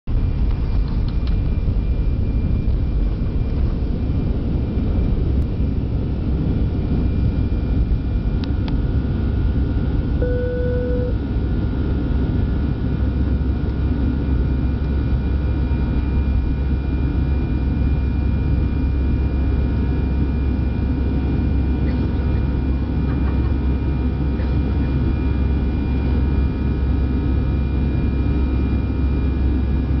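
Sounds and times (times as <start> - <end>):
jet engines rumbling in cabin: 0.1 - 30.0
short single tone: 10.2 - 11.2.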